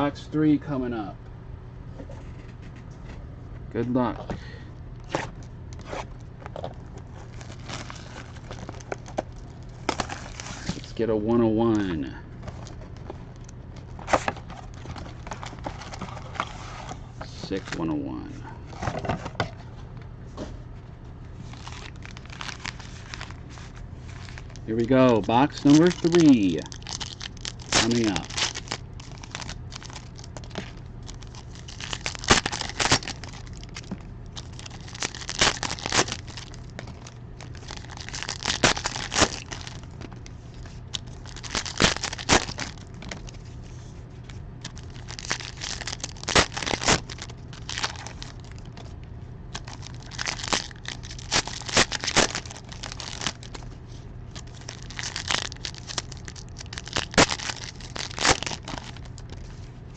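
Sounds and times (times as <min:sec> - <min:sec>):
steady low hum: 0:00.0 - 0:59.9
plastic wrappers tearing and crinkling: 0:07.2 - 0:11.0, 0:21.4 - 0:43.5, 0:44.2 - 0:48.9, 0:49.5 - 0:53.7, 0:54.3 - 0:59.6.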